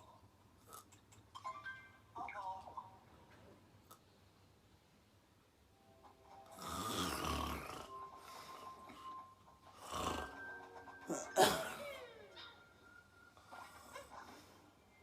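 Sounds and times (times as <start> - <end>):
woman snoring: 6.5 - 8.7, 9.8 - 10.5.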